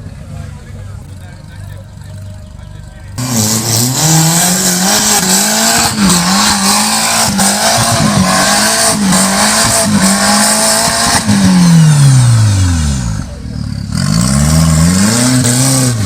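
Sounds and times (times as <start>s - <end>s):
engine revving hard: 3.2s - 16.0s.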